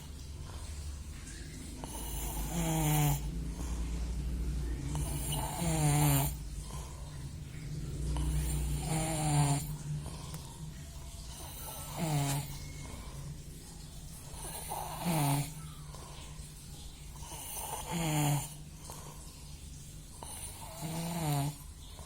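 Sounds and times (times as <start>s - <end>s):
person snoring: 1.8s - 4.0s, 4.9s - 6.9s, 8.0s - 10.5s, 11.3s - 12.6s, 14.4s - 15.6s, 17.2s - 18.6s, 20.2s - 21.6s.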